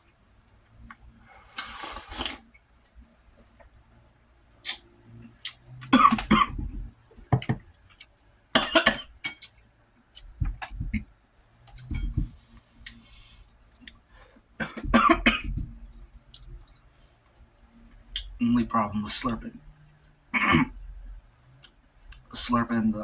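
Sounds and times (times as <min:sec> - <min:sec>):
man coughing harshly: 0:08.6 - 0:09.1, 0:14.6 - 0:15.5, 0:20.4 - 0:20.7.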